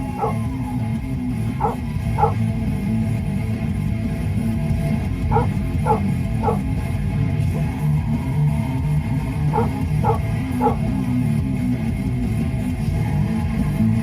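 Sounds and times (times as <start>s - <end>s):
dog barking: 0.0s - 0.6s, 1.5s - 2.5s, 5.2s - 6.7s, 9.5s - 11.0s.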